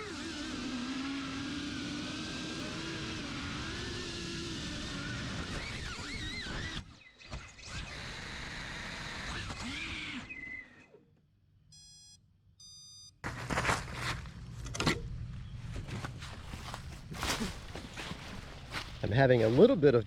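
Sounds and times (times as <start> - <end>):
quadcopter motors whining: 0.0 - 11.0
short electronic beeps: 11.7 - 13.2
rustling: 13.2 - 20.0.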